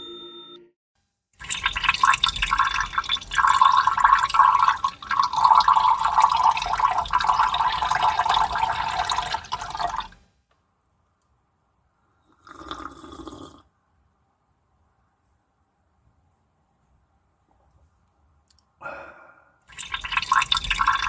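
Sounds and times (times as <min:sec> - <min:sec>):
liquid pouring into a glass: 0:01.4 - 0:10.2, 0:12.4 - 0:13.6, 0:19.7 - 0:21.0.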